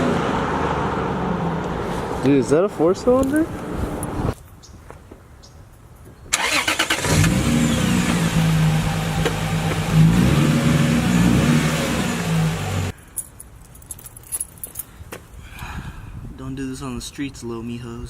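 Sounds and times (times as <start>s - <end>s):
car engine revving hard: 6.4s - 12.9s.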